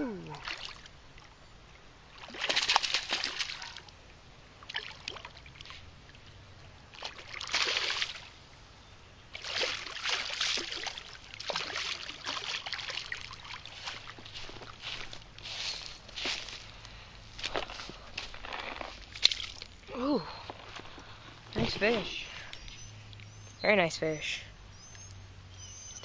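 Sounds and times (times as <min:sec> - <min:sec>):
fish splashing in water: 0:02.1 - 0:04.0, 0:04.6 - 0:06.2, 0:06.9 - 0:08.4, 0:09.3 - 0:15.2, 0:19.0 - 0:19.9.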